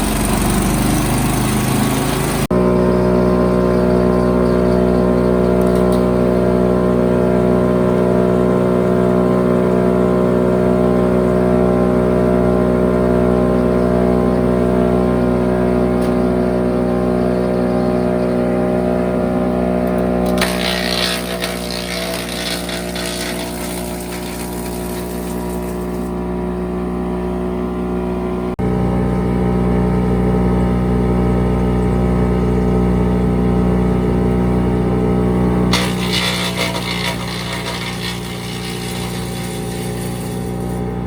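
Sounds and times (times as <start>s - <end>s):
wood chipper engine running: 0.0s - 41.0s
brush crackling through chipper: 19.9s - 26.2s.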